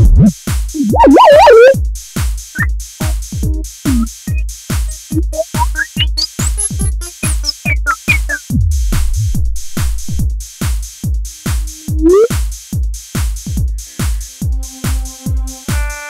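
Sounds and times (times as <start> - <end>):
drum machine kick: 0.0 - 15.4
rising synth sweeps: 0.8 - 1.8, 3.9 - 4.1.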